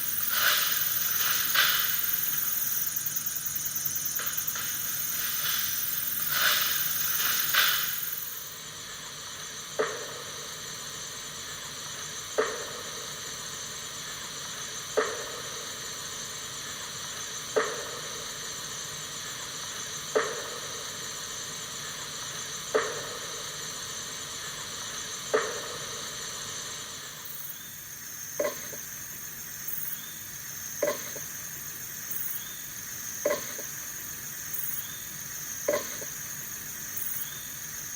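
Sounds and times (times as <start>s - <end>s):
night insect chorus: 0.0s - 37.9s.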